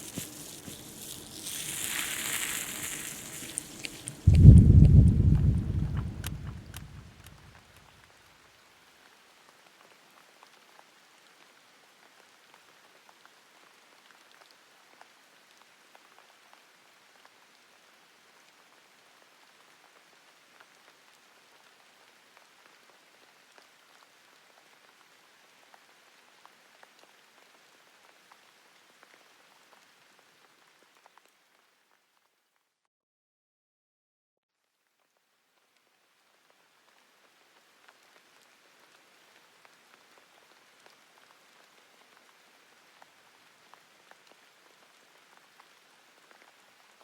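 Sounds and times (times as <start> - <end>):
faint crackle: 0.0 - 7.9, 34.6 - 47.0
soft ticks: 1.0 - 7.4.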